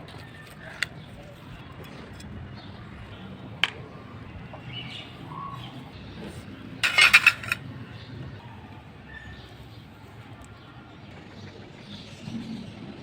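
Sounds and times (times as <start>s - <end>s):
small metal pieces clinking: 6.8s - 7.6s.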